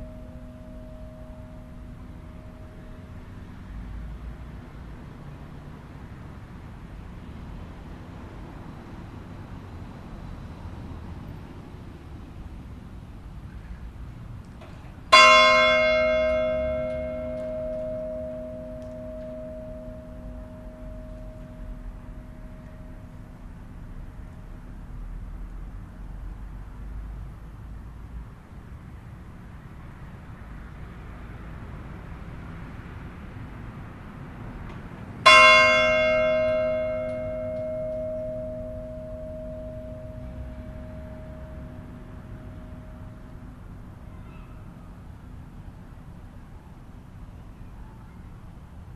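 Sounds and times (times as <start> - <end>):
church bell ringing: 0.0 - 4.3, 15.1 - 23.8, 35.2 - 44.0.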